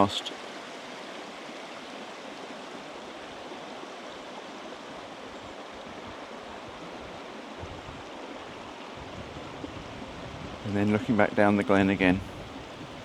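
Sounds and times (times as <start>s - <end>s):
river rushing over stones: 0.0s - 13.0s.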